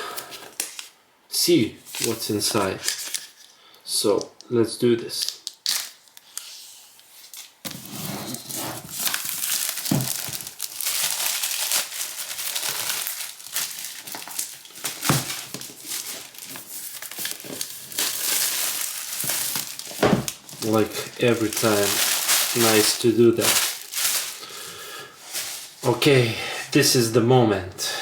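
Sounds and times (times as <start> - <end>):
packaging crinkling and tearing: 1.9 - 3.5, 5.2 - 6.5, 7.2 - 25.8.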